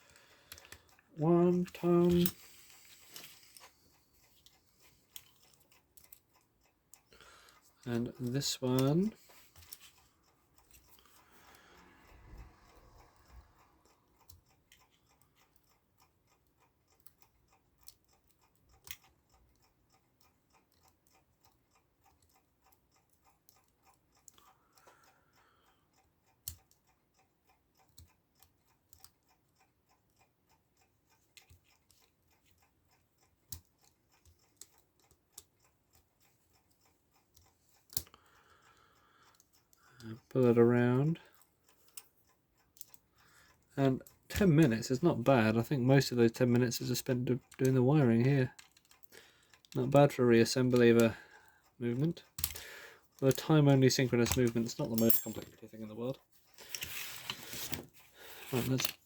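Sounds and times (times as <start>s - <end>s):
small metal clicks and taps: 0.0s - 11.5s, 14.2s - 25.1s, 30.2s - 40.3s, 41.2s - 44.8s, 48.5s - 59.0s.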